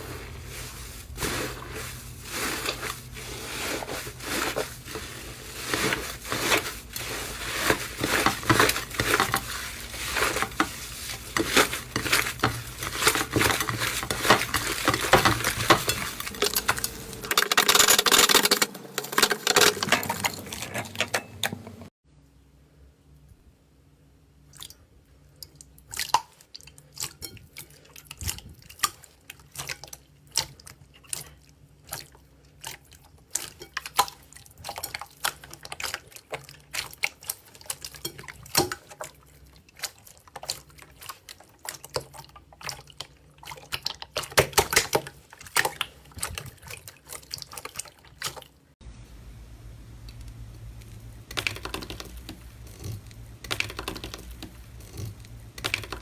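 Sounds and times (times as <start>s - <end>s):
steady low hum: 0.0s - 24.4s, 48.8s - 56.0s.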